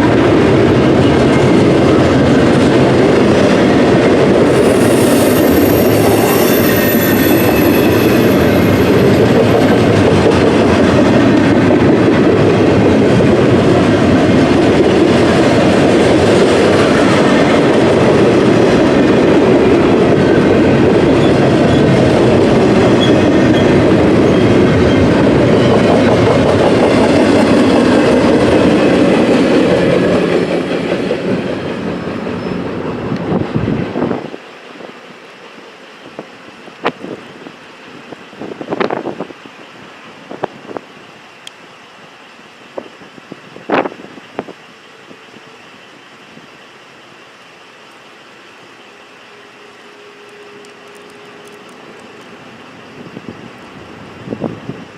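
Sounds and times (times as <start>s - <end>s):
train wheels rumbling and clattering: 0.0s - 40.9s
high wheel squeal: 4.4s - 9.1s, 22.8s - 25.9s.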